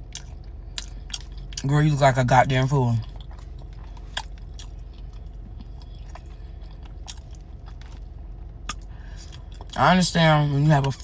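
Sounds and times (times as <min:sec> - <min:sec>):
person chewing food: 0:00.0 - 0:02.1, 0:02.9 - 0:09.8
low steady hum: 0:00.0 - 0:11.0.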